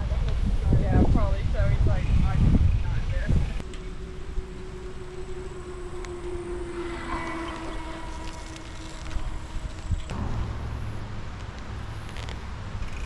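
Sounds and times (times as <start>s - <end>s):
low engine rumble: 0.0s - 13.0s
motor traffic passing: 3.6s - 13.0s.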